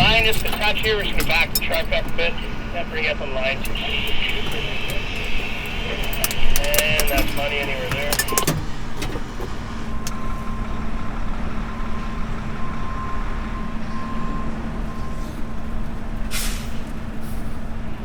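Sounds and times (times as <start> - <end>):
truck diesel engine running: 0.0 - 18.0
air brake hiss: 16.3 - 17.6.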